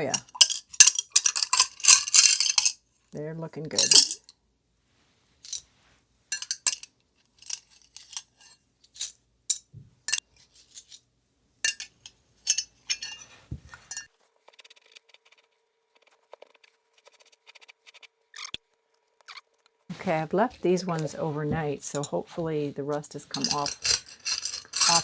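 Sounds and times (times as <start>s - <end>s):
metal hardware clattering: 0.0s - 2.8s, 23.3s - 25.0s.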